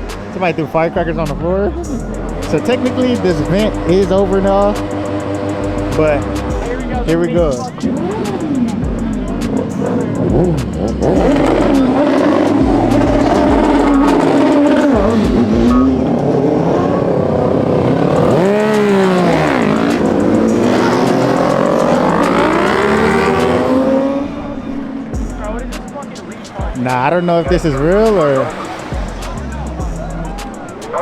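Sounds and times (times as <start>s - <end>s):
car engines revving: 0.0s - 31.0s.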